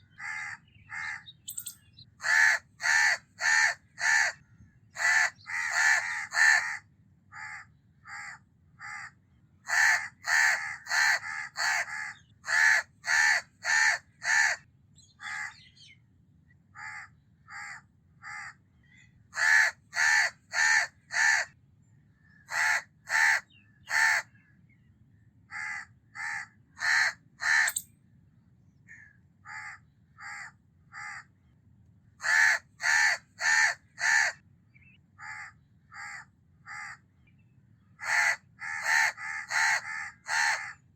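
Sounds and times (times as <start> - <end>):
crow cawing: 0.0 - 1.3, 2.2 - 4.4, 5.0 - 14.6, 15.2 - 15.6, 16.8 - 18.6, 19.3 - 21.5, 22.4 - 24.3, 25.5 - 27.8, 28.9 - 31.3, 32.2 - 34.4, 35.2 - 37.0, 38.0 - 40.8.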